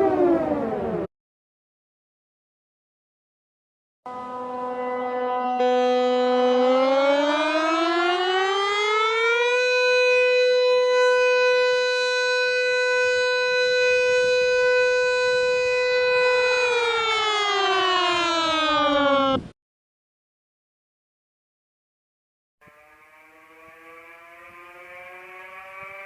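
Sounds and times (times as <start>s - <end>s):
reversed air raid siren wail: 0.0s - 1.1s, 4.1s - 19.6s, 22.6s - 26.0s.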